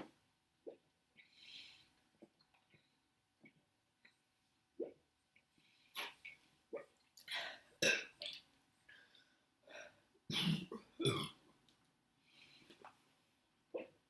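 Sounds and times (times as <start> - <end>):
woman burping: 7.8 - 8.4, 10.3 - 11.4.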